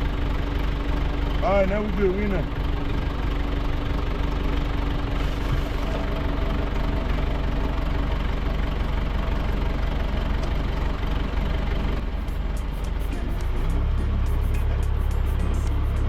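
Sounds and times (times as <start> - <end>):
tractor engine running under load: 0.0 - 16.0
steady hum: 4.8 - 10.3, 11.3 - 16.0.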